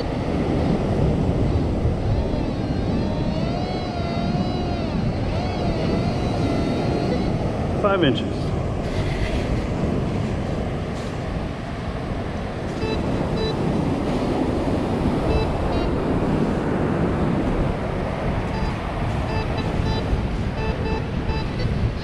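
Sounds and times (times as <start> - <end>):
wind: 0.0 - 22.0
metal detector beeps: 1.4 - 7.4, 12.8 - 13.6, 15.3 - 16.0, 18.5 - 22.0.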